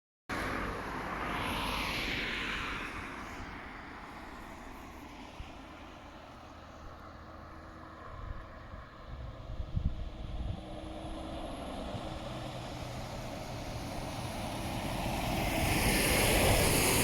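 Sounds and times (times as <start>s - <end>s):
aircraft passing: 5.7s - 17.0s.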